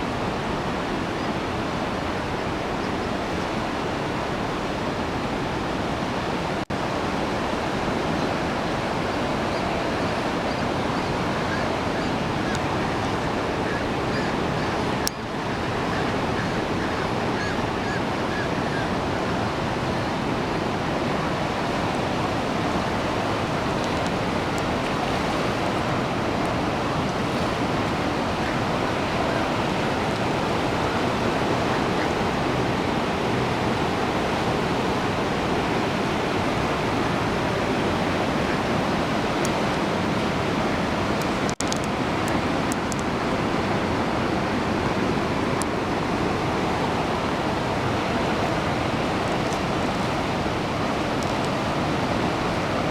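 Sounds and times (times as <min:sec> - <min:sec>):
waterfall rushing: 0:19.1 - 0:52.9.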